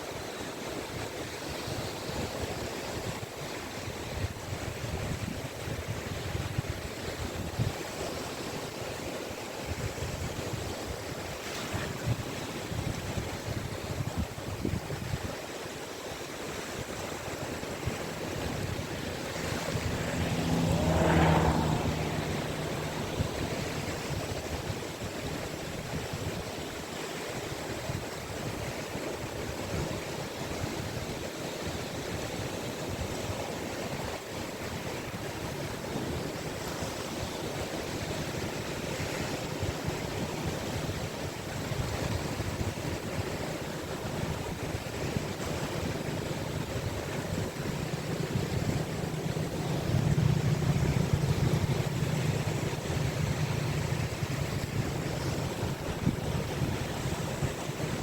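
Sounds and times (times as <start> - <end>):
surf washing onto beach: 1.4 - 58.0
wave breaking: 16.3 - 26.4, 44.6 - 58.0.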